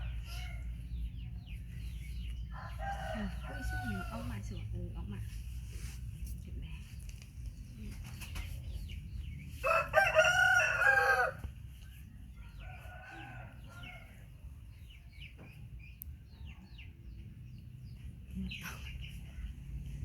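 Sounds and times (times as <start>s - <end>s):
rooster crowing: 2.5s - 4.4s, 9.6s - 11.5s, 12.6s - 14.1s.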